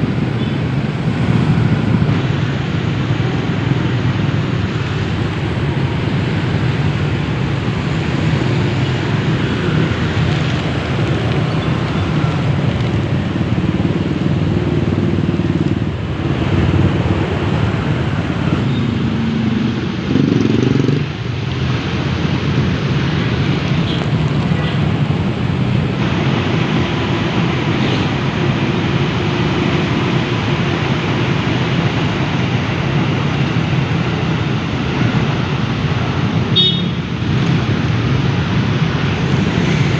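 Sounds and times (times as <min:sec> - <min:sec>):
city road traffic rumble: 0:00.0 - 0:39.9.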